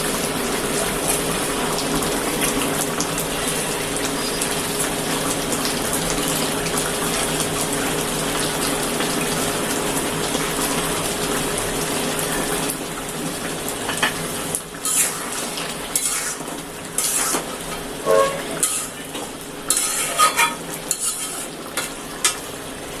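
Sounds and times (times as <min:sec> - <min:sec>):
metal utensils clinking on dishes: 0:14.8 - 0:22.4.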